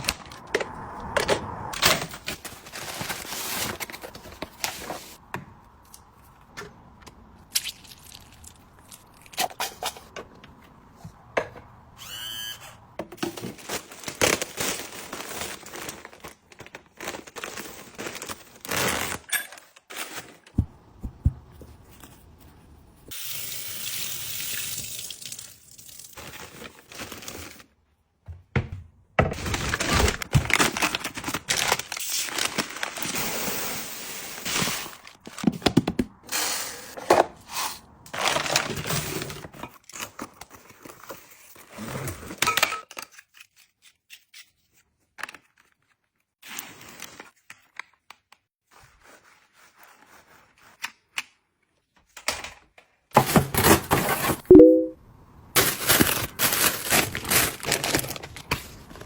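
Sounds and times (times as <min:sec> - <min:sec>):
packaging rustling and crinkling: 0:01.9 - 0:05.2, 0:55.6 - 0:59.0.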